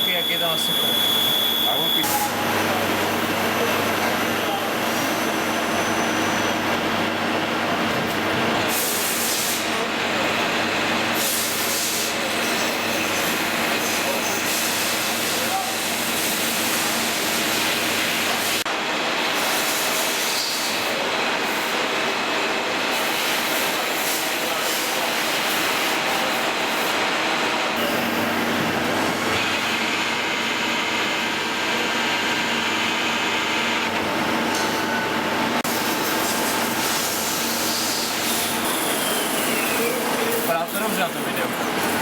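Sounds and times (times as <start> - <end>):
lathe cutting noise: 25.4 - 42.0.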